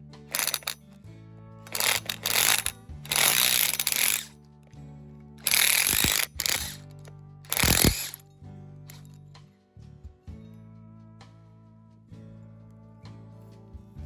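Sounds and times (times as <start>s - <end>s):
background music with low notes: 0.0s - 14.0s
impact drill hammering: 0.3s - 0.9s, 1.7s - 4.3s, 5.4s - 8.2s.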